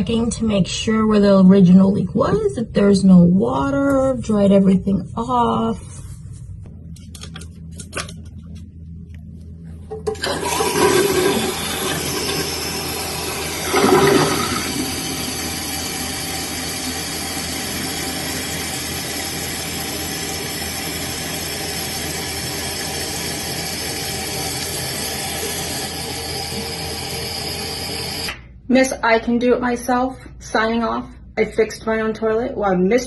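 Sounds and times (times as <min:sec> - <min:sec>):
toilet flushing: 0:09.9 - 0:28.4
toilet tank refilling hiss: 0:10.1 - 0:28.3.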